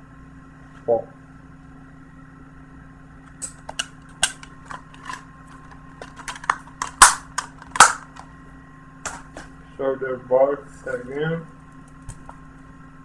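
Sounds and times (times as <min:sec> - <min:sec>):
low electrical hum: 0:00.0 - 0:13.0
plastic cases clicking and tapping: 0:06.0 - 0:08.2.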